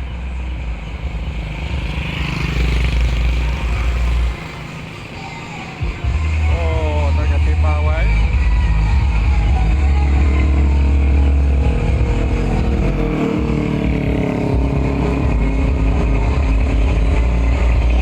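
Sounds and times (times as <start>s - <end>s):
vehicles passing with engines running: 0.0s - 18.0s
deep bass rumble: 6.1s - 18.0s.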